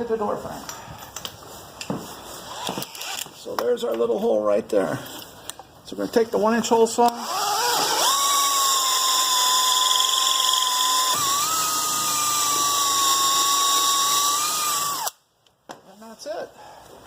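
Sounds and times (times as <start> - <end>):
power drill hole saw whining: 7.1 - 15.2.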